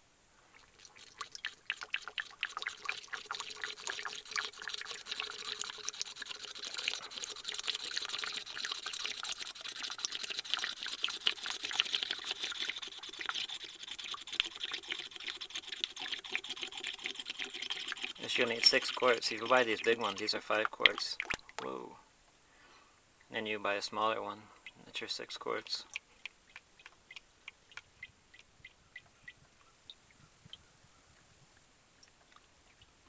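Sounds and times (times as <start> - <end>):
oil glugging through funnel: 0.4 - 21.8.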